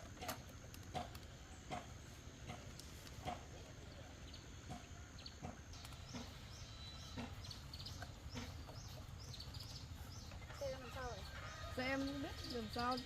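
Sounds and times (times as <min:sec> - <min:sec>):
small birds chirping: 0:00.0 - 0:13.0
chickens clucking: 0:04.6 - 0:12.4.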